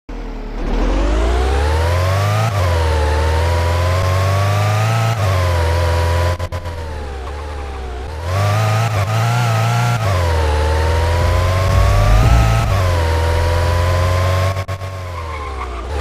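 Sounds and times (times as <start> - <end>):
car whining: 6.2 - 16.0
low hum: 10.7 - 14.7.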